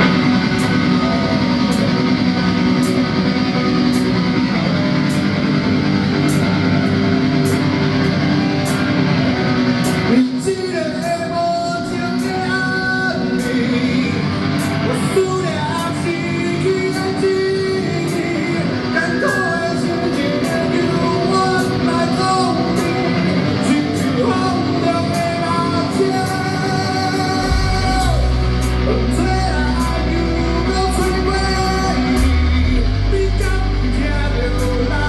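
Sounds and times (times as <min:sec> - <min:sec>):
heavy bass line: 0:00.0 - 0:10.5, 0:13.0 - 0:35.0
person singing: 0:00.0 - 0:35.0
rock guitar: 0:00.0 - 0:35.0
drums playing: 0:27.2 - 0:33.8.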